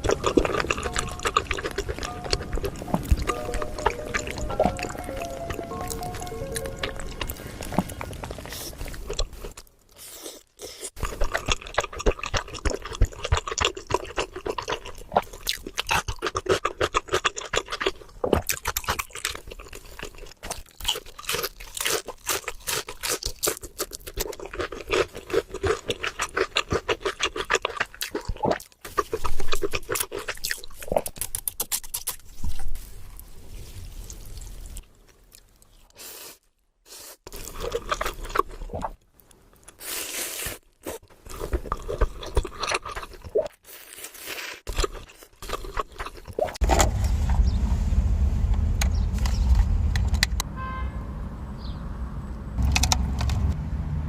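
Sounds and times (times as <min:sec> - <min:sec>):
person chewing with wet mouth clicks: 0:00.0 - 0:09.6, 0:10.9 - 0:32.2.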